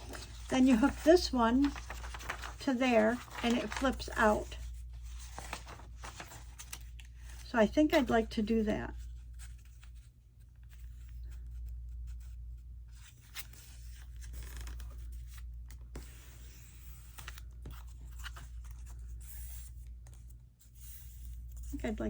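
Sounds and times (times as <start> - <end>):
paper rustling and tearing: 0.0 - 7.4, 12.9 - 20.2.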